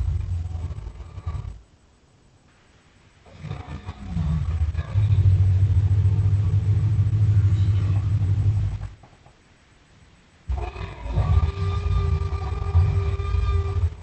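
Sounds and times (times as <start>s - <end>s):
deep monster growl: 0.0s - 1.7s, 3.3s - 8.8s, 10.5s - 14.0s.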